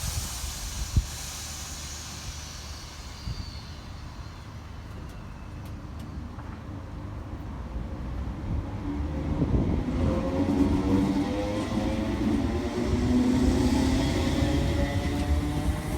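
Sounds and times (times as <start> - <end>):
high hiss: 0.0 - 4.9.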